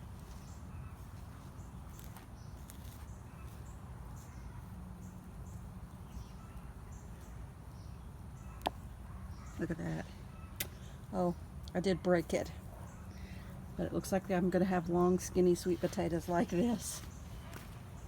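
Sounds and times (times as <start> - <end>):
hands rustling in soil: 0.0 - 7.8, 14.4 - 18.0.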